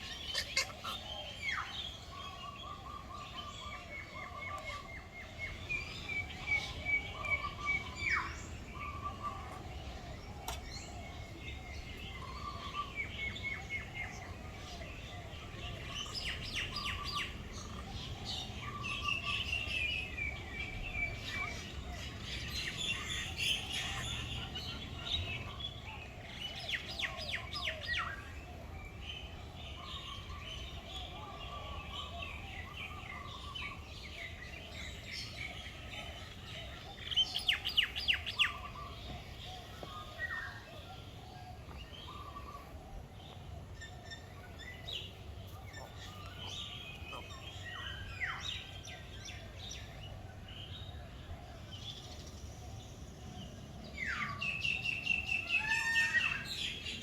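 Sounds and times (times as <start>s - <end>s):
birds chirping: 0.0s - 57.0s.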